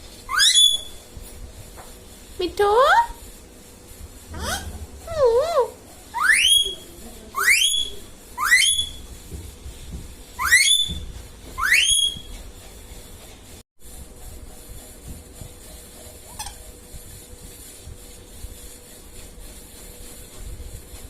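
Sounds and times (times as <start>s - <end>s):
parrot whistling rising calls: 0.3s - 1.0s, 6.2s - 6.8s, 7.4s - 9.0s, 10.4s - 11.0s, 11.6s - 12.3s.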